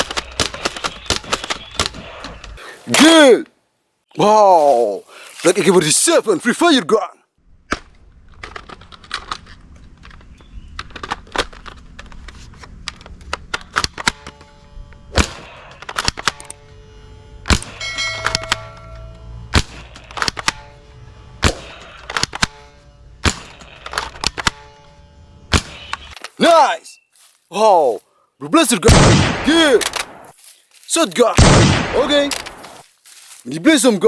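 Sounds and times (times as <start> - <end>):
low steady hum: 16.5 - 19.6
short ringing tones: 17.8 - 19.5
gunshots: 28.8 - 30.3, 31.3 - 32.8.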